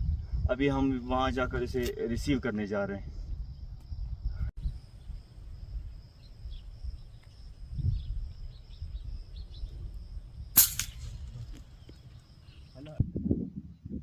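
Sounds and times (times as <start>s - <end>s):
high insect drone: 2.3s - 13.0s
faint bird chirps: 6.1s - 14.0s.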